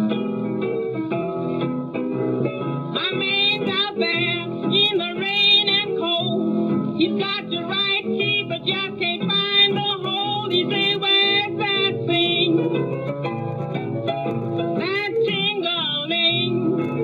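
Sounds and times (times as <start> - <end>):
piano: 0.0 - 17.0
woman singing: 3.0 - 6.4, 7.0 - 12.7, 14.8 - 16.7.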